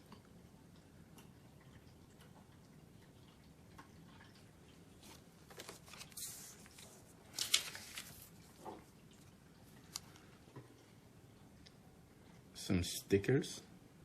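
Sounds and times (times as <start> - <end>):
packaging rustling and crinkling: 5.1 - 8.6.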